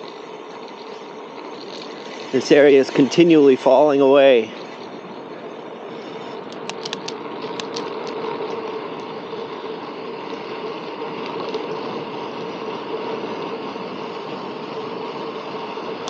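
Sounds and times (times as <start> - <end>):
wind and bicycle tyres rushing: 0.0 - 16.0
sharp clicks: 6.5 - 8.3.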